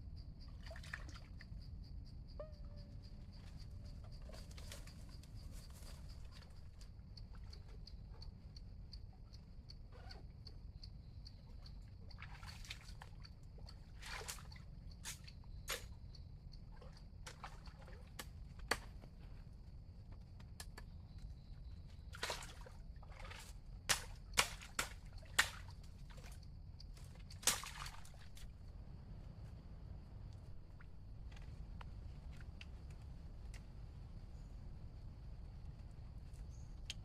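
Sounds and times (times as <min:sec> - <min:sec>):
water sloshing and splashing: 0:00.6 - 0:01.6, 0:11.9 - 0:15.9, 0:16.6 - 0:19.1, 0:21.9 - 0:28.7.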